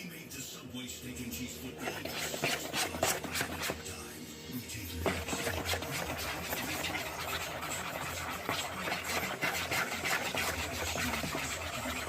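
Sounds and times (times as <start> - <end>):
spoon scraping batter in bowl: 1.6 - 4.1, 4.9 - 12.0.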